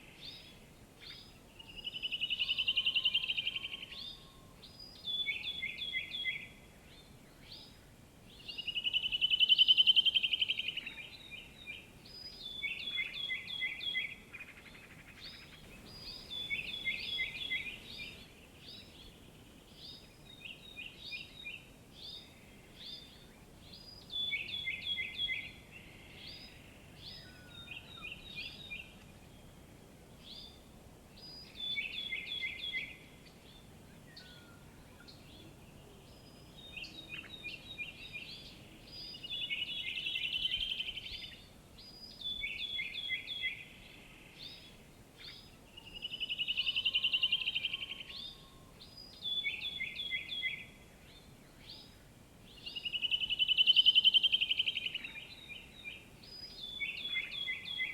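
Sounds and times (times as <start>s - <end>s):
bird whistling song: 1.1s - 6.5s, 8.4s - 14.2s, 15.2s - 19.2s, 19.8s - 25.6s, 31.2s - 33.0s, 36.1s - 43.8s, 44.4s - 57.9s.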